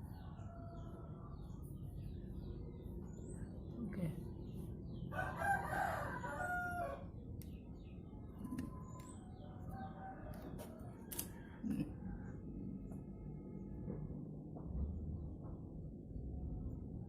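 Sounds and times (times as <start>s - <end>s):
low background rumble: 0.0s - 17.0s
rooster crowing: 5.1s - 7.1s.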